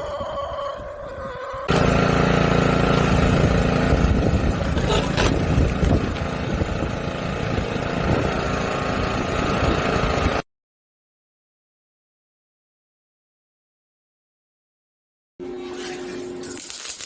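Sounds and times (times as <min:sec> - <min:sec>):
motor running steadily: 0:01.7 - 0:10.4.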